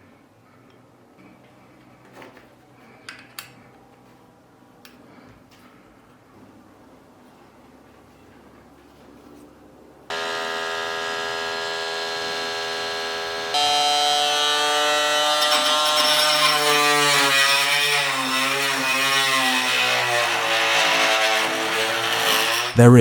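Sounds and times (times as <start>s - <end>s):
oscillating multi-tool whine: 10.1s - 22.8s.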